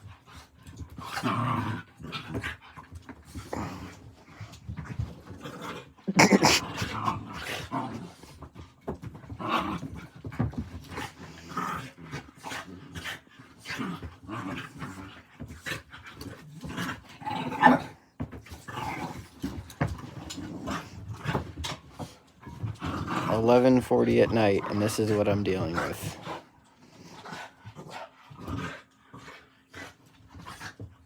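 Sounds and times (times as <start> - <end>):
dogs growling: 0.0 - 31.0
dog crying: 6.1 - 6.7.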